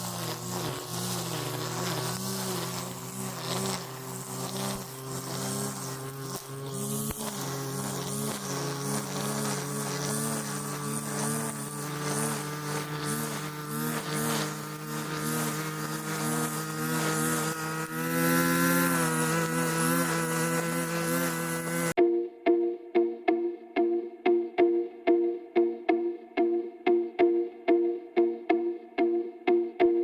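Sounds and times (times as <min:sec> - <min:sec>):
grass trimmer motor running: 0:00.0 - 0:22.0.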